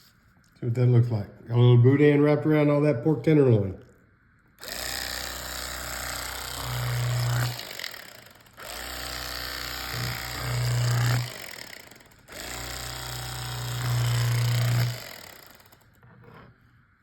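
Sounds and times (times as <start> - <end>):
electric carving knife buzzing: 4.6 - 16.2.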